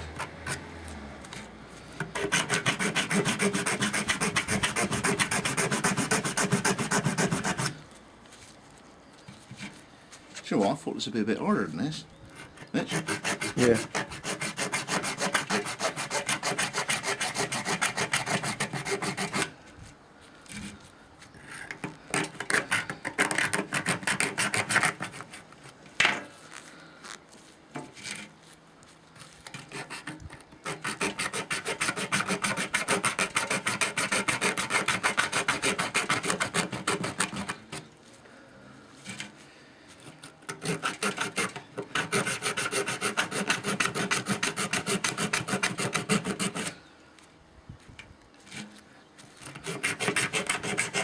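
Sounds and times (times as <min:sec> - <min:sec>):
saw blade sawing coconut shell: 0:00.0 - 0:07.8, 0:12.6 - 0:19.5, 0:22.1 - 0:25.5, 0:29.6 - 0:37.9, 0:40.1 - 0:46.8, 0:49.4 - 0:51.0.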